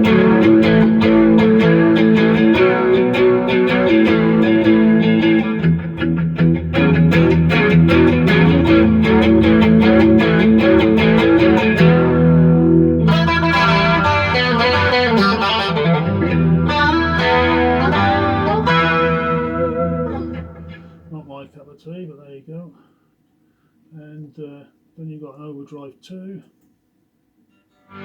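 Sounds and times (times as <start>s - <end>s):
distorted electric guitar: 0.0s - 21.3s, 27.8s - 28.0s.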